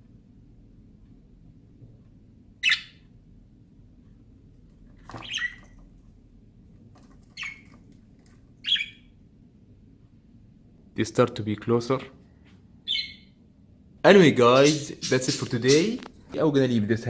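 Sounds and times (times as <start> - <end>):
faint low hum: 0.0 - 17.0
budgerigars squawking: 2.6 - 3.0, 5.2 - 5.6, 8.6 - 9.1, 12.9 - 13.2.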